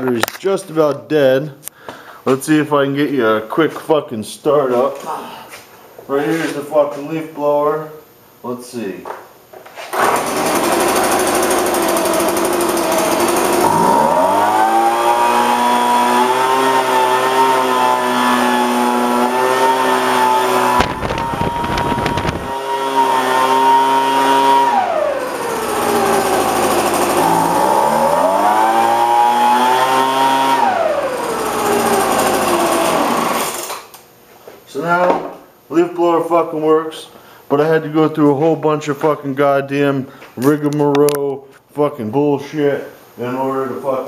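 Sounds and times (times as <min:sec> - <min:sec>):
leaf blower engine revving: 0:10.0 - 0:33.7.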